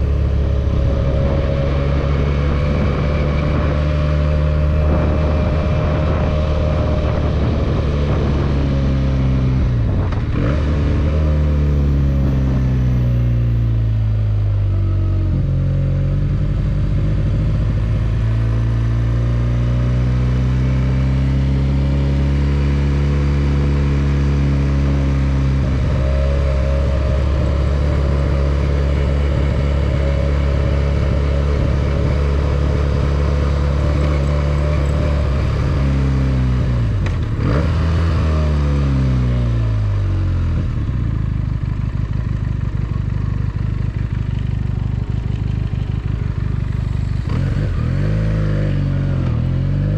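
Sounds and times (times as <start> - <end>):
motorcycle engine running: 0.0 - 49.9.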